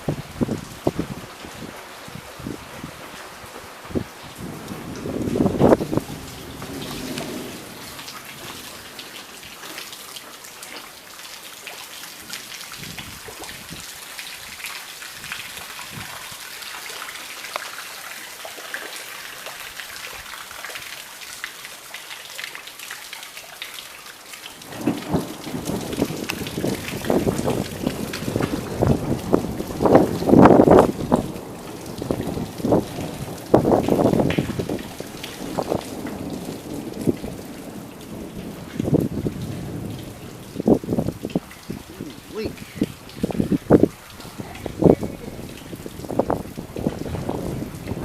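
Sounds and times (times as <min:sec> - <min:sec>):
steady rain falling: 0:00.0 - 0:48.0
thunder rumble: 0:03.9 - 0:10.1, 0:24.6 - 0:48.0.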